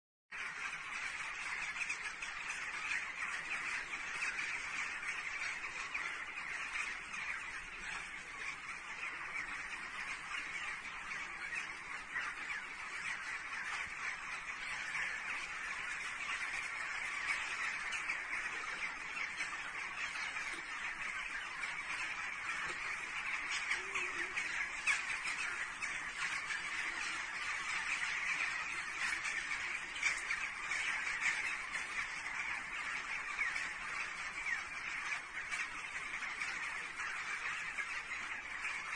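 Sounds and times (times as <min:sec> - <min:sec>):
flock of birds calling: 0:00.3 - 0:38.9.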